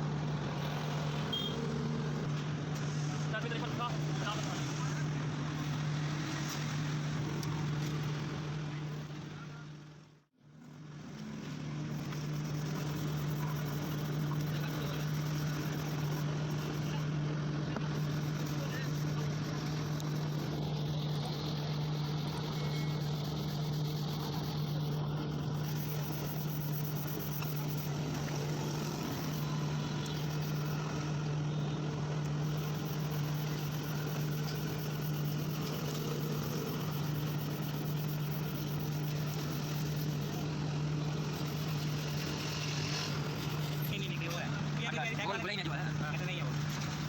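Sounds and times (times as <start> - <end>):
motor humming: 11.1 - 47.0.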